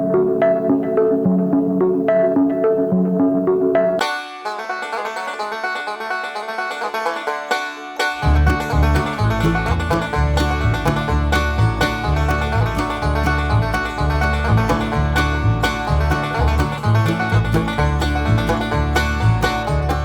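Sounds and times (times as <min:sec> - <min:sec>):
bass line: 0:00.0 - 0:04.0, 0:08.2 - 0:20.0
plucked banjo: 0:00.0 - 0:20.0.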